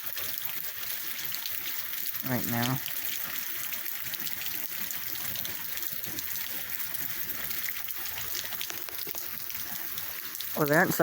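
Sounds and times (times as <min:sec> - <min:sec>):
heavy rain pouring: 0:00.0 - 0:11.0
water running: 0:02.2 - 0:02.9, 0:04.8 - 0:11.0.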